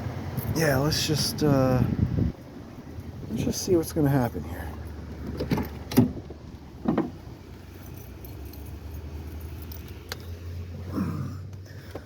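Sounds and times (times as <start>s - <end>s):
car keys jangling: 4.8s - 10.4s.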